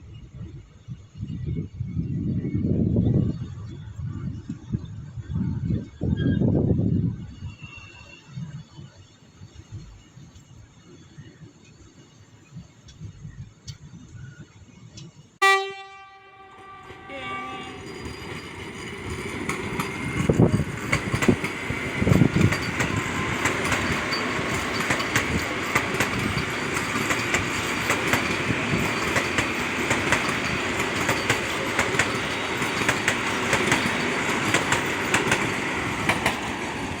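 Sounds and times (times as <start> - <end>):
train rushing past: 15.4 - 37.0
train wheels clicking over rail joints: 16.6 - 37.0.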